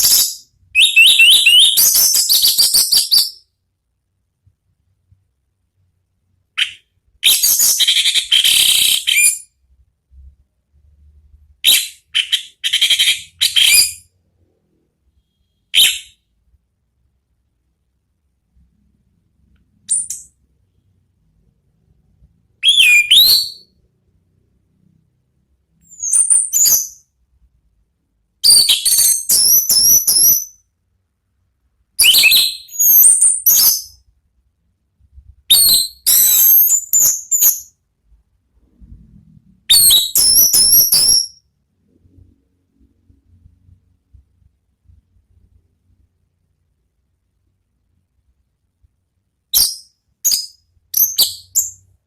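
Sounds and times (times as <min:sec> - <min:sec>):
thrush singing whistled phrases: 0:00.0 - 0:03.4, 0:15.2 - 0:16.3, 0:22.6 - 0:23.8, 0:39.7 - 0:41.4.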